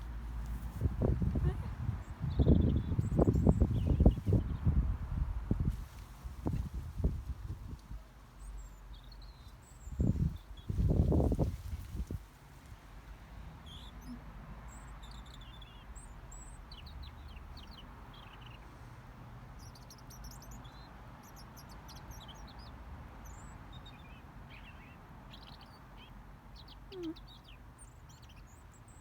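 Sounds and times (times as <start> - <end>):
birds chirping: 0.0 - 4.8, 13.3 - 18.8, 19.6 - 29.0
low background rumble: 0.0 - 19.7.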